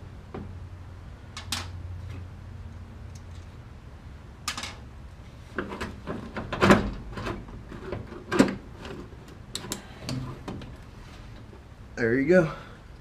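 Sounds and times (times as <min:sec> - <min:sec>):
metal clunks and knocks: 0:05.6 - 0:10.8.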